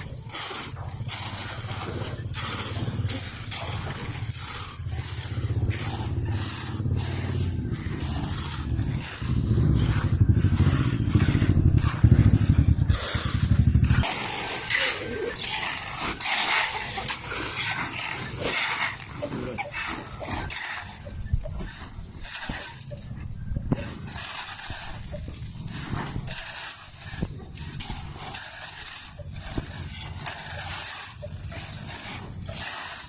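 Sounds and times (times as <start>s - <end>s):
engine running: 0.0s - 26.2s
scraping and clattering: 0.0s - 33.0s.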